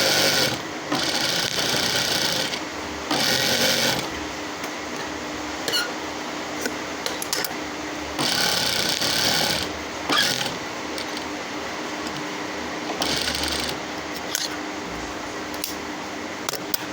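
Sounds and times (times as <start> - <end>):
sewing machine stitching: 0.0 - 4.2, 8.2 - 11.3, 13.0 - 14.5.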